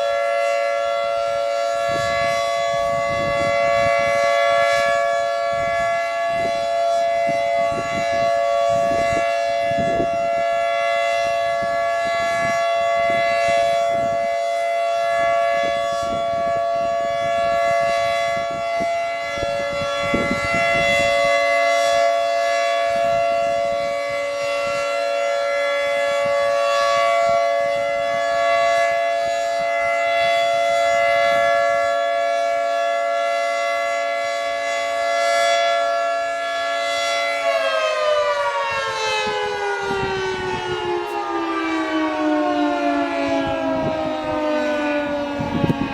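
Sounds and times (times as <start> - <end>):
two-tone warning siren: 0.0 - 45.9.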